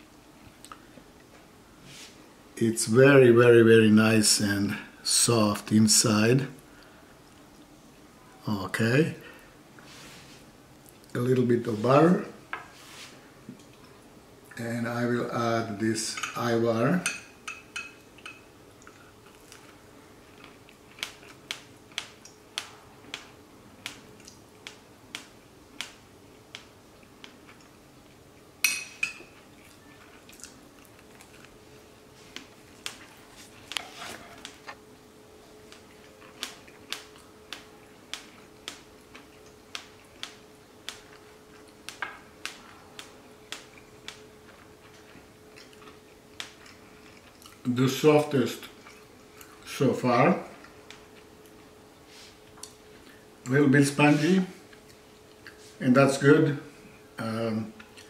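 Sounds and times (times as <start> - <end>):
faint steady hum: 0.0 - 58.0
person chewing bread: 18.7 - 28.5, 29.2 - 34.8, 35.5 - 47.7, 48.6 - 49.7, 54.6 - 55.8, 57.7 - 58.0.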